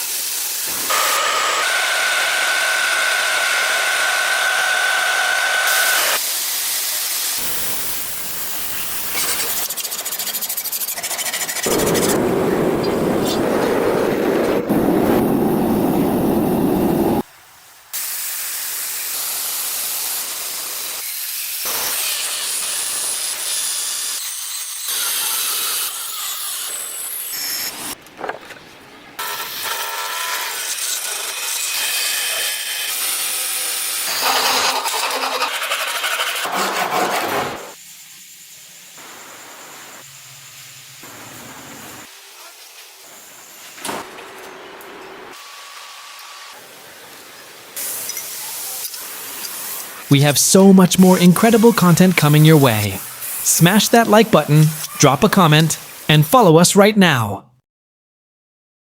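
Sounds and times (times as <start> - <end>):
grinding and sanding steel: 34.0 - 37.4.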